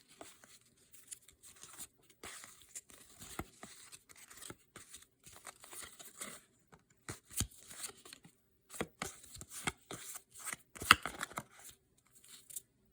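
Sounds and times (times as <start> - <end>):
trading cards flipped by hand: 7.1 - 12.6.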